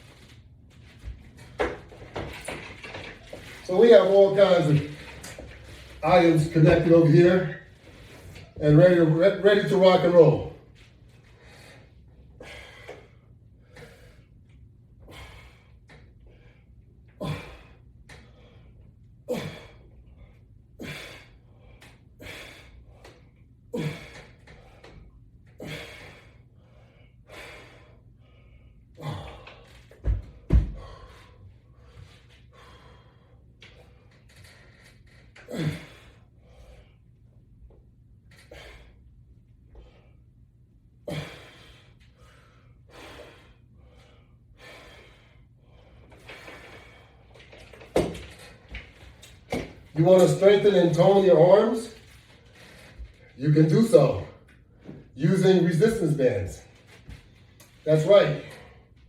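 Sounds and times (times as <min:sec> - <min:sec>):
man exhaling and gasping: 0:11.4 - 0:14.3, 0:15.0 - 0:34.1, 0:35.4 - 0:37.0, 0:38.3 - 0:39.0, 0:41.0 - 0:47.3.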